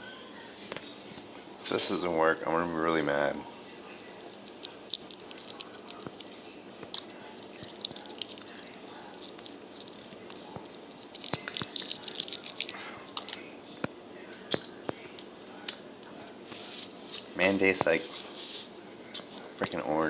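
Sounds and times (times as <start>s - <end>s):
plastic packets crinkling: 7.5s - 13.4s.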